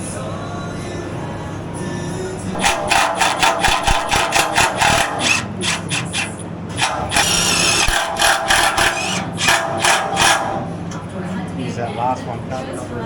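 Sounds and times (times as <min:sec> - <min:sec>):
tool working in rapid strokes: 0:02.5 - 0:10.7.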